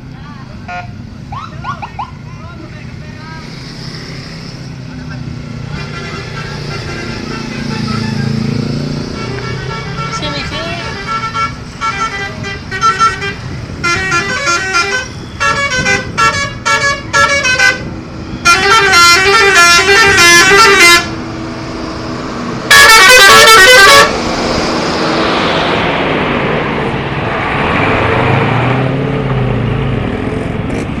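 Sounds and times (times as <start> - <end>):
bus engine and road noise: 0.0 - 31.0
musical air horn tooting: 9.1 - 21.1, 22.7 - 24.2.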